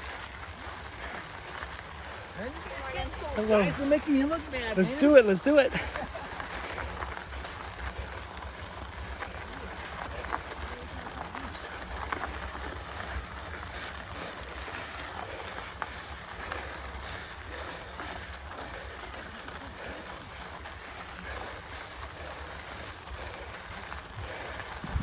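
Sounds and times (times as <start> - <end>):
mountain bike on dirt trail: 0.0 - 25.0
wind on microphone: 24.8 - 25.0.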